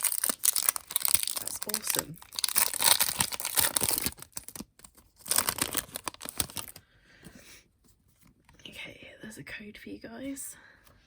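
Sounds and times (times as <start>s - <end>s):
foil wrapper crinkling and tearing: 0.0s - 6.8s.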